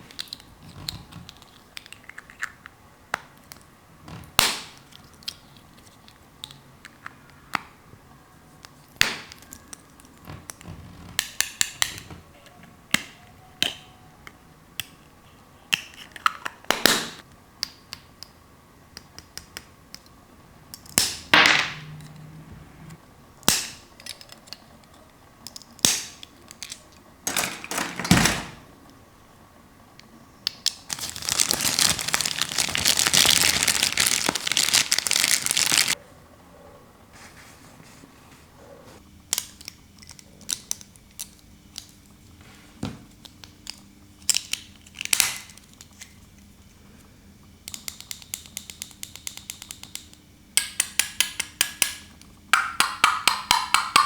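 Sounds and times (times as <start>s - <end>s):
plastic packaging crinkling: 30.9s - 36.0s
plastic toy pieces clicking: 43.5s - 46.1s, 47.6s - 52.0s.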